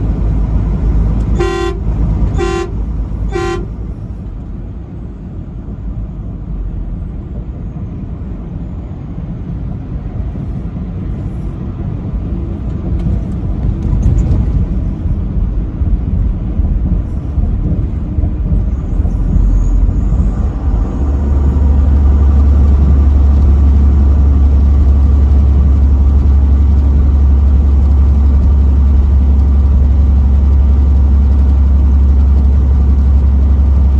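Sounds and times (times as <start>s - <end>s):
road noise: 0.0s - 33.9s
truck engine drone: 0.0s - 33.9s
truck horn blasts: 1.0s - 4.0s.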